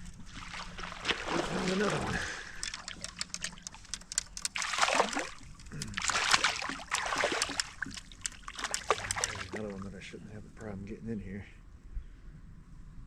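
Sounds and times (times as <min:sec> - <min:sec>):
fish thrashing and splashing: 0:00.2 - 0:09.8
water dripping: 0:00.6 - 0:09.8.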